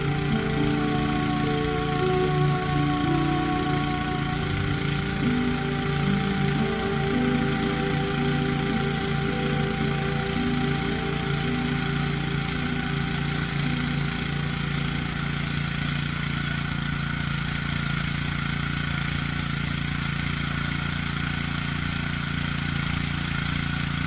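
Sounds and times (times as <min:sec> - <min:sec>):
small engine running steadily: 0:00.0 - 0:24.0.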